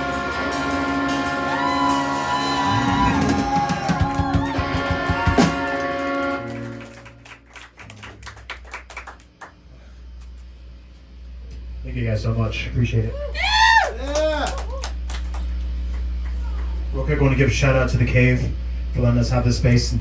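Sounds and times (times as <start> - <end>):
live band with electric guitar: 0.0 - 7.2
audience clapping: 0.2 - 9.6, 13.7 - 16.9.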